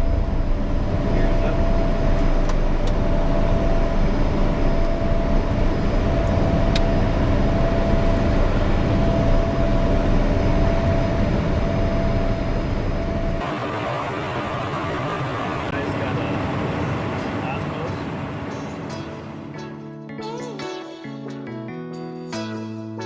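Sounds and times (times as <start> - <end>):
steady whine: 13.3 - 19.8
vehicle rumble: 13.4 - 19.7.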